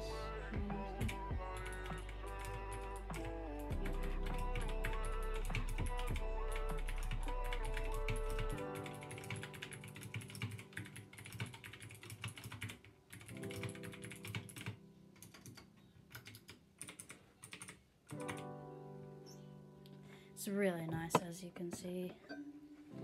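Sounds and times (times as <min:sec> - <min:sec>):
background music with held notes: 0:00.0 - 0:11.4
clicky mechanical keyboard typing: 0:07.7 - 0:18.5.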